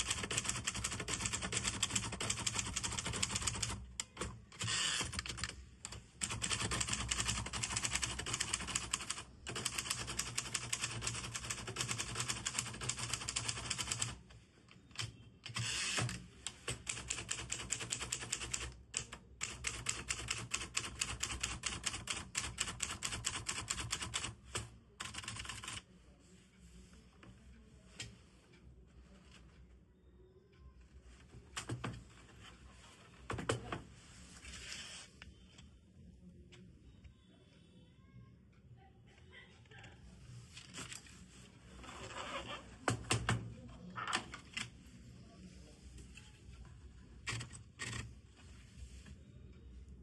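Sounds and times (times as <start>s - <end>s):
manual typewriter keystrokes: 0.0s - 14.2s, 14.9s - 25.8s, 47.2s - 48.1s.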